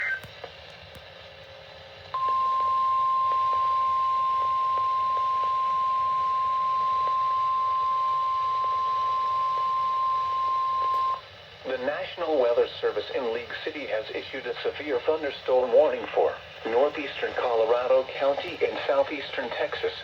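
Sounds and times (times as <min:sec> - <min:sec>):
faint radio hiss: 0:00.0 - 0:20.0
loud single-pitch alarm tone: 0:02.2 - 0:11.2.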